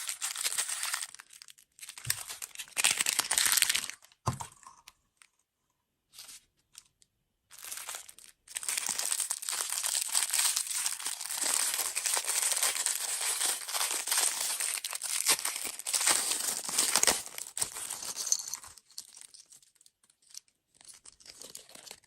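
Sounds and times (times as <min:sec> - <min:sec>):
plastic wrapper crinkling: 0:00.0 - 0:04.4, 0:07.5 - 0:22.0.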